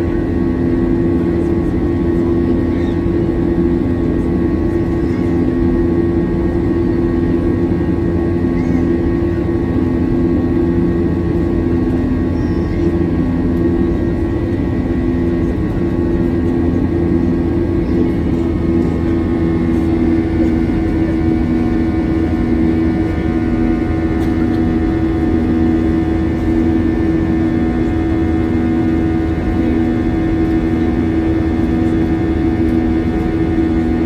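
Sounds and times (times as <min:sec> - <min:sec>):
jet engines rumbling in cabin: 0:00.0 - 0:34.0.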